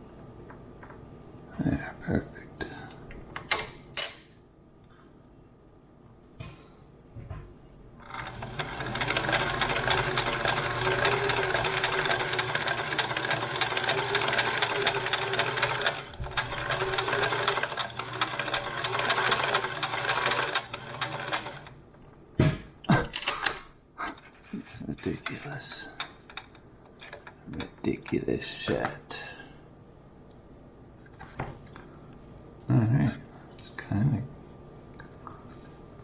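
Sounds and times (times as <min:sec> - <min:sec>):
sewing machine stitching: 0:08.0 - 0:21.7.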